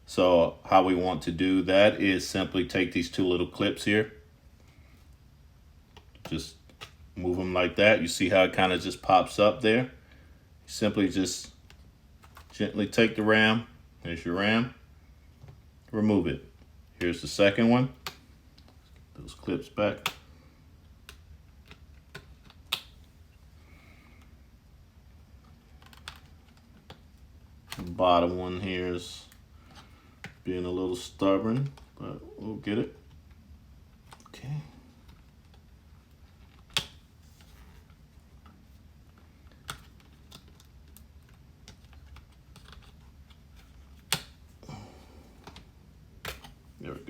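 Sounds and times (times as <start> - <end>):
small clicks and taps: 38.4 - 44.3.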